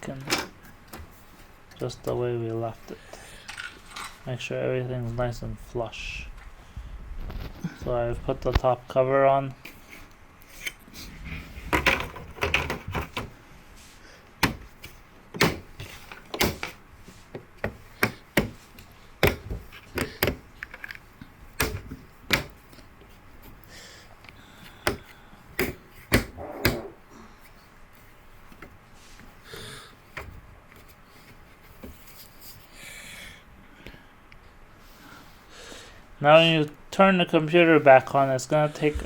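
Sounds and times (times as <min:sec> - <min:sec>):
quiet rustling: 0:30.1 - 0:32.7.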